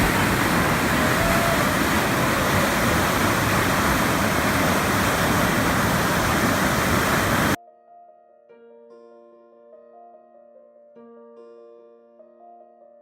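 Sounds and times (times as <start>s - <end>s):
waterfall rushing: 0.0s - 7.6s.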